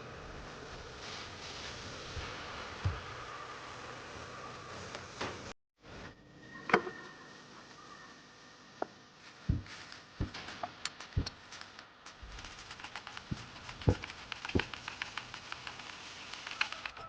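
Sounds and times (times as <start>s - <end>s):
deep thuds: 9.5s - 10.4s
objects being handled clicking: 10.2s - 17.0s.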